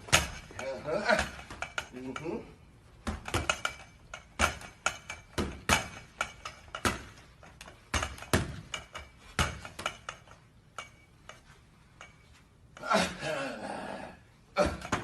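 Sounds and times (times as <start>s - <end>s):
boxing gloves punching: 0.0s - 2.2s, 3.0s - 10.9s, 14.6s - 15.0s.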